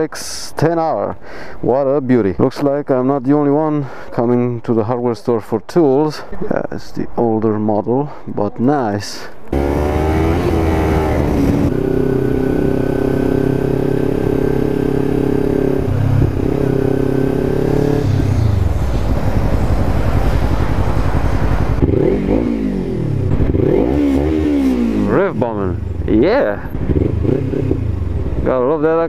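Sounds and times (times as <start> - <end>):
motorcycle revving blips: 9.5 - 18.8, 20.5 - 25.2, 26.6 - 28.5
motorcycle engine running: 9.6 - 28.7.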